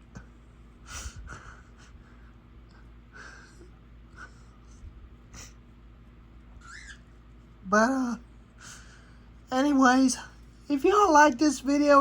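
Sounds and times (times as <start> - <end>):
low background hum: 0.0 - 12.0
man breathing and sniffling: 0.1 - 6.0, 8.4 - 9.4.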